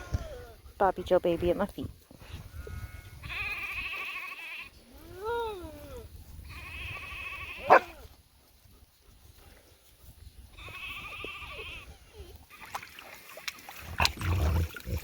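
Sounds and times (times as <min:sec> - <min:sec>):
lambs bleating: 0:02.5 - 0:04.7, 0:06.5 - 0:07.9, 0:10.6 - 0:11.9.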